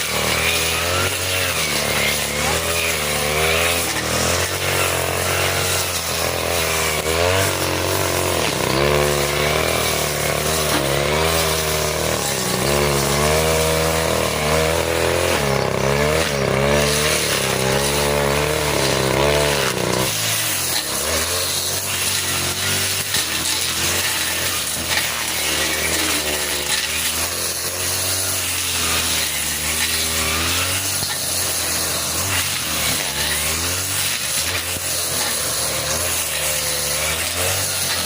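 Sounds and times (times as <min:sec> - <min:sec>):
brush cutter engine running: 0:00.0 - 0:38.0.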